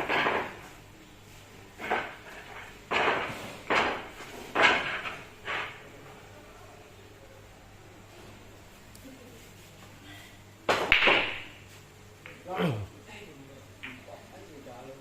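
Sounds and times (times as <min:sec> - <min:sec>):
billiard balls clacking: 0:00.0 - 0:00.8, 0:01.8 - 0:06.0, 0:10.7 - 0:12.5.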